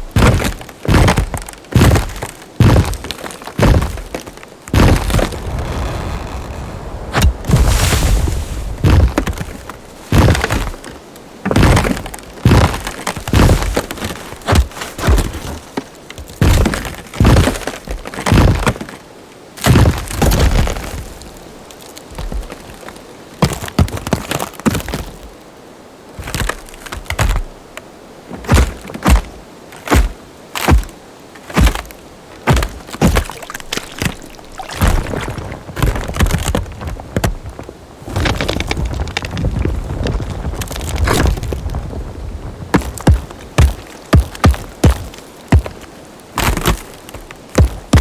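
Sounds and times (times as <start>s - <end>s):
wood cracks and snaps: 0.2s - 8.0s, 8.8s - 19.0s, 26.2s - 27.5s, 28.4s - 30.9s, 31.5s - 41.8s, 42.8s - 48.0s.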